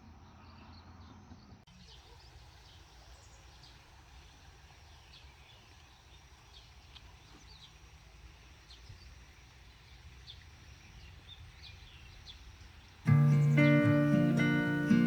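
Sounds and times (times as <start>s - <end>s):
high bird chirps: 13.1s - 15.0s.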